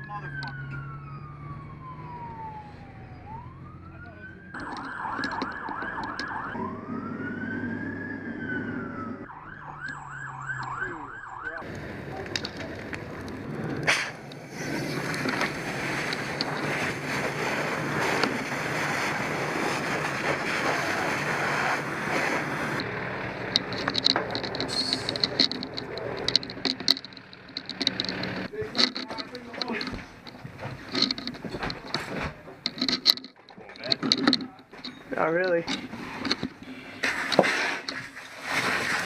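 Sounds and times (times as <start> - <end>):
electronic siren yelp and wail: 0.0 - 11.6
low engine drone: 4.6 - 31.4.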